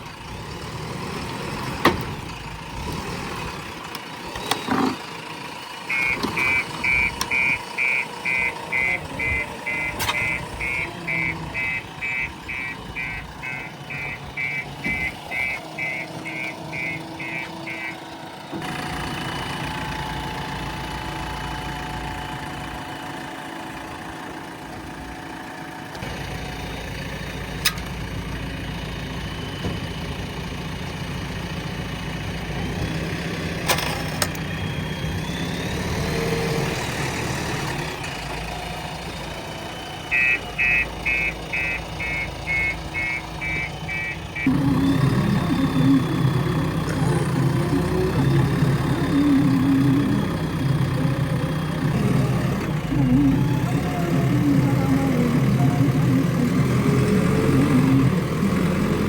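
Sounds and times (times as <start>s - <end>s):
diesel engine running: 0.0s - 59.0s
reversing alarm beeping: 5.9s - 18.2s, 39.0s - 59.0s.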